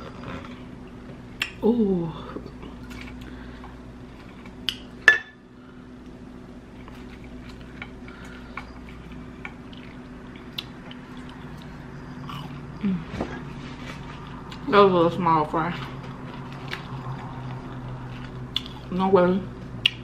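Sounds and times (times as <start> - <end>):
dishware clink: 5.1 - 5.4
chewing: 6.8 - 12.6, 15.7 - 18.9.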